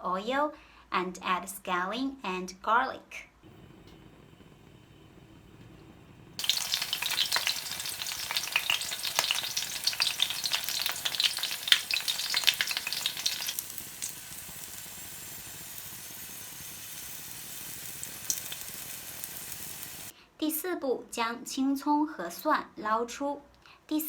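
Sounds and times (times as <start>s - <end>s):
food sizzling in hot oil: 3.6s - 20.1s.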